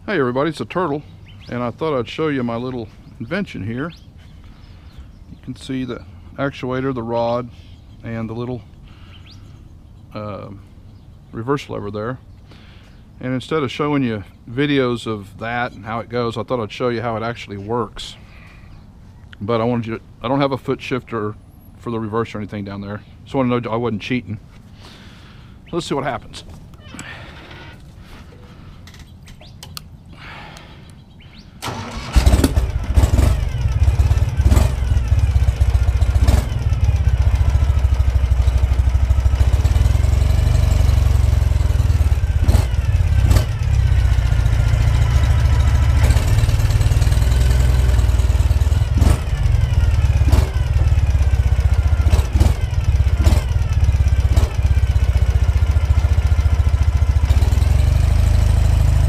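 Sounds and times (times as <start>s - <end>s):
motorcycle engine running: 31.7s - 59.0s.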